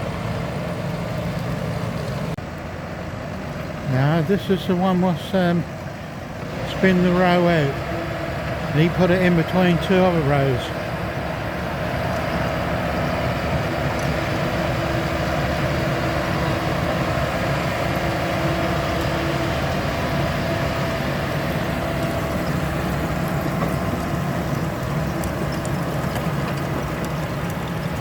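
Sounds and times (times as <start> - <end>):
tractor engine drone: 0.0 - 28.0.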